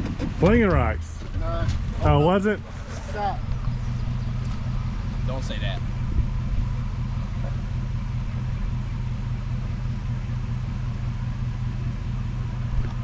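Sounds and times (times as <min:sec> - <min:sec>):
vehicle engine running: 0:00.0 - 0:13.0.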